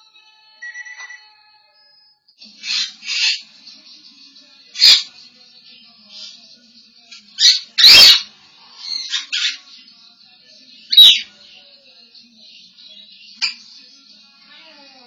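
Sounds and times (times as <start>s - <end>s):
parrot calling: 2.6s - 3.4s, 7.4s - 9.6s, 10.9s - 11.3s
parrot squawk: 2.6s - 3.4s, 4.8s - 5.1s, 7.4s - 9.6s, 10.9s - 11.3s
parrot chirps: 7.4s - 9.6s.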